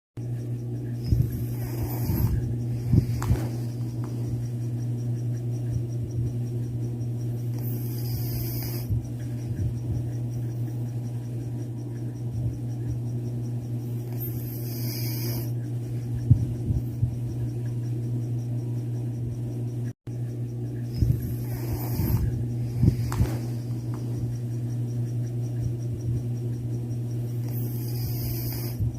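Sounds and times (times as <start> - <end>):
steady low hum: 0.2 - 28.9
cat snoring: 1.0 - 4.0, 7.6 - 9.0, 14.1 - 15.6, 20.9 - 23.8, 27.4 - 28.9.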